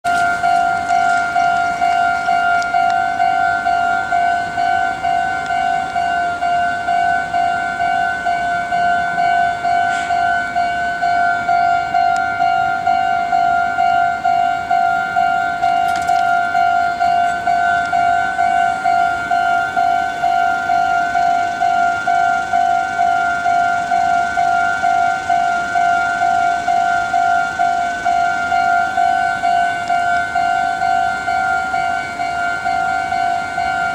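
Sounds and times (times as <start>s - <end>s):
level crossing warning bell: 0.0s - 33.9s.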